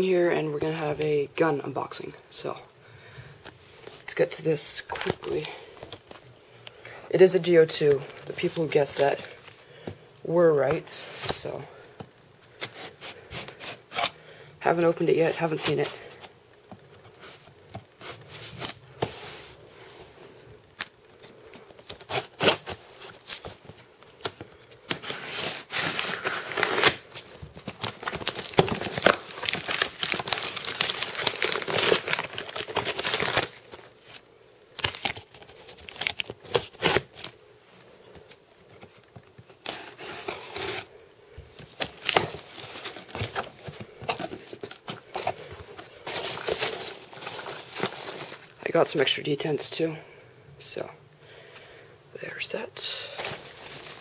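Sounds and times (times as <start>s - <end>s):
packaging tearing and crinkling: 21.8s - 34.2s, 34.8s - 37.4s, 41.6s - 48.6s.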